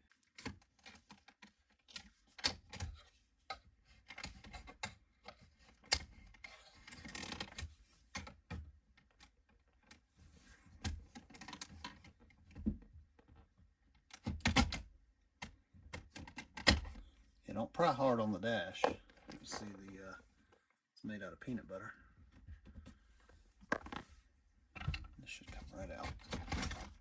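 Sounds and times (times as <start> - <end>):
plastic clicks and knocks: 23.6 - 24.1.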